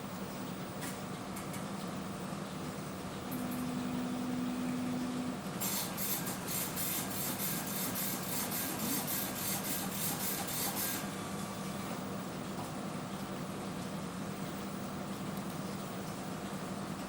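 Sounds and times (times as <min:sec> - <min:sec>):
low hum of lab equipment: 0:00.0 - 0:17.0
machine hissy mechanical strokes: 0:05.6 - 0:11.1.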